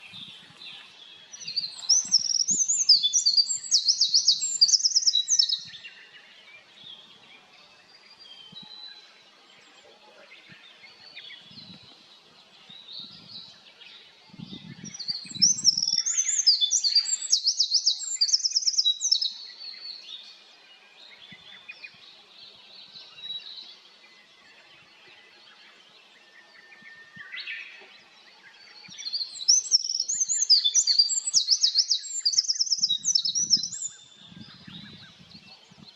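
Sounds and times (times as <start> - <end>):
wren singing trills: 0.0 - 5.8, 14.5 - 19.4, 28.8 - 35.9
faint birdsong: 0.0 - 35.9.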